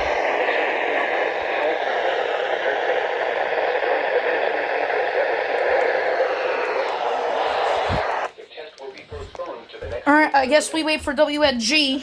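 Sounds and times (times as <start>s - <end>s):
radio static hiss: 0.0s - 10.2s.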